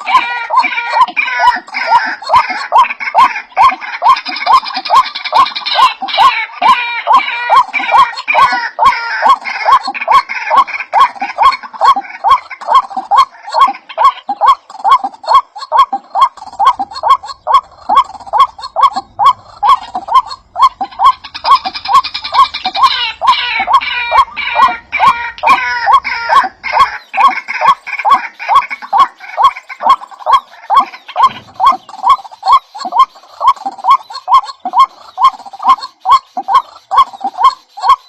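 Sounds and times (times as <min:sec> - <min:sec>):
bird calling rhythmically: 0:00.0 - 0:38.0
high busy bird chirping: 0:00.0 - 0:38.0.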